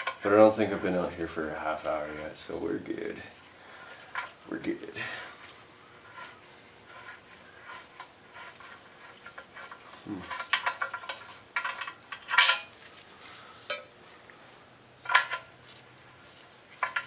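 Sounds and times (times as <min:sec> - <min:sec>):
metal tools clinking: 0:09.3 - 0:12.8.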